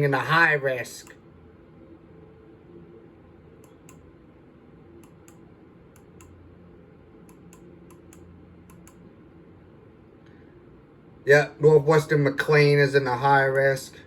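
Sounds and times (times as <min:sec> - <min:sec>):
low steady hum: 0:00.0 - 0:14.0
faint computer clicking: 0:03.6 - 0:04.2, 0:05.0 - 0:06.4, 0:07.2 - 0:09.1.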